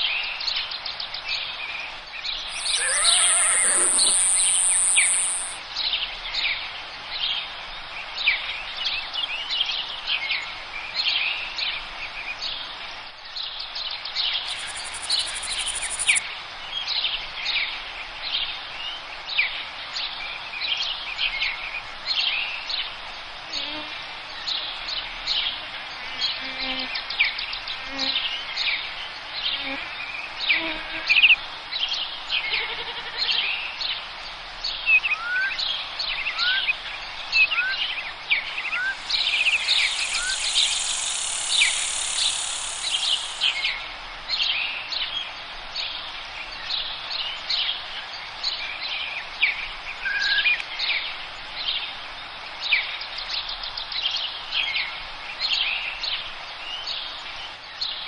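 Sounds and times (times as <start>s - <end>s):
steady high hiss: 2.4s - 5.6s, 14.4s - 16.6s, 36.7s - 44.0s
bird whistling short rising notes: 2.5s - 5.6s, 38.7s - 43.6s
birds chirping and trilling: 2.5s - 5.6s, 14.4s - 16.2s, 37.6s - 43.7s.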